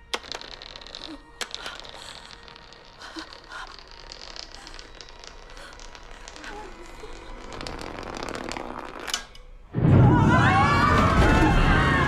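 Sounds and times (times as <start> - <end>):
electrical crackling and popping: 0.0 - 9.5.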